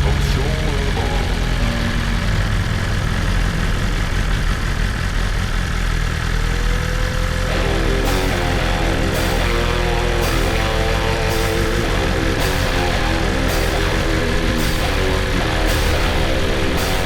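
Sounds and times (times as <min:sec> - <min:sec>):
heavy rock music: 0:00.0 - 0:04.0, 0:07.4 - 0:17.0
cymbal hits: 0:07.5 - 0:17.0.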